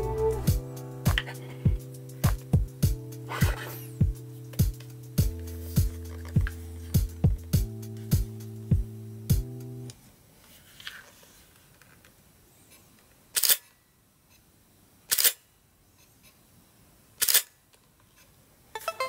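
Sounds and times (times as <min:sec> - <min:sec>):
camera shutter clacks: 0:17.2 - 0:17.5.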